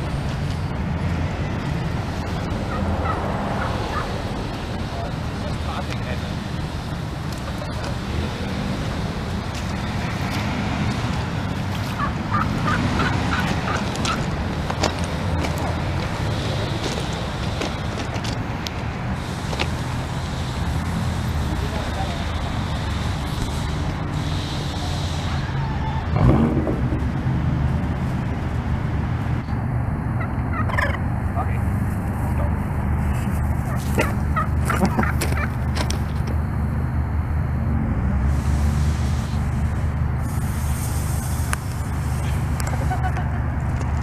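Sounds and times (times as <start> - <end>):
low rumble of traffic: 0.0 - 44.0
wild turkey calling: 2.3 - 4.4, 11.8 - 14.3, 30.2 - 31.0, 33.6 - 35.7.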